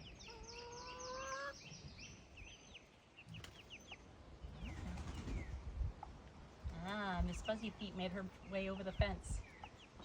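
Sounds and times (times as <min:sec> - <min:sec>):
baby chicks peeping: 0:00.0 - 0:05.6.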